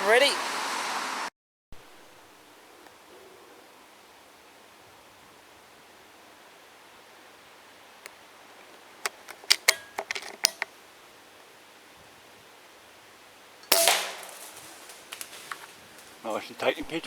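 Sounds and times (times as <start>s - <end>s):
air rifle shot: 13.7s - 14.6s.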